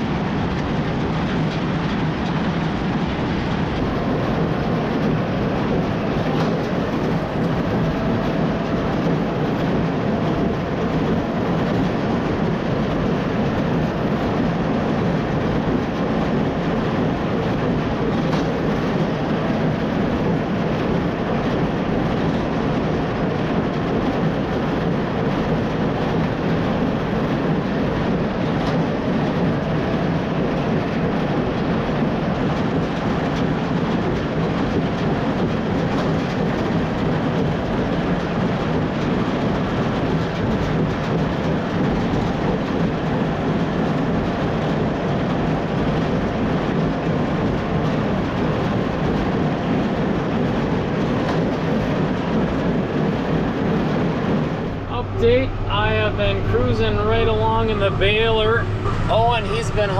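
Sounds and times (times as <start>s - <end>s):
baler mechanical clatter: 0.0s - 59.9s
tractor engine under load: 51.1s - 59.9s.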